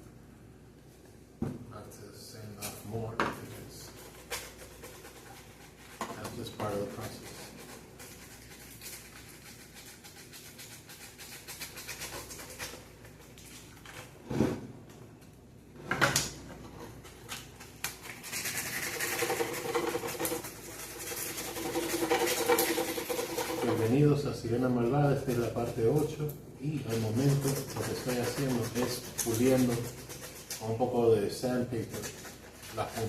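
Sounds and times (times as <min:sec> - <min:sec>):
sandpaper scratching: 0:06.6 - 0:12.8, 0:18.0 - 0:24.1, 0:26.8 - 0:33.0.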